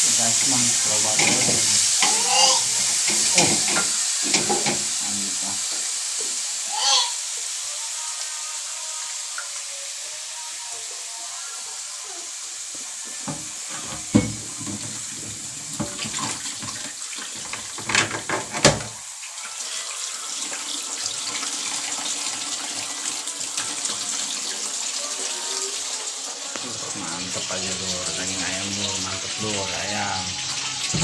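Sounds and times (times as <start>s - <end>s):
tap water running into sink: 0.0s - 7.1s, 12.7s - 31.0s
dishes clattering in sink: 0.1s - 5.1s, 13.1s - 19.0s.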